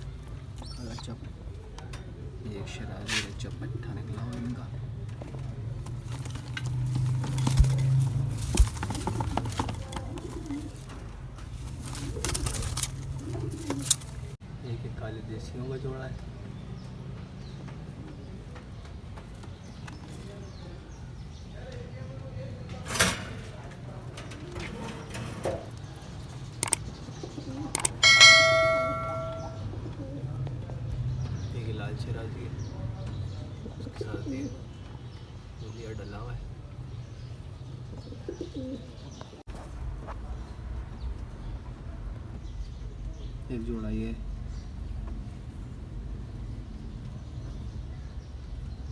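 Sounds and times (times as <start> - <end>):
pigeons cooing: 0.0 - 14.4, 24.2 - 31.5, 33.0 - 35.2, 37.0 - 39.4
scattered clicks: 26.6 - 26.9, 27.7 - 28.0
ringing metallic clang: 28.0 - 29.6.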